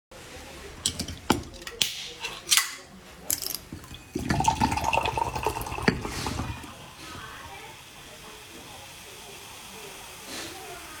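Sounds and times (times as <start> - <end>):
gurgling drinking: 3.3 - 7.9.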